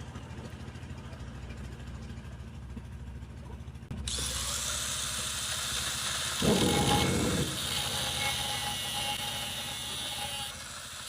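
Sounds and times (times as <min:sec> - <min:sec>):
motor humming: 0:04.0 - 0:11.0.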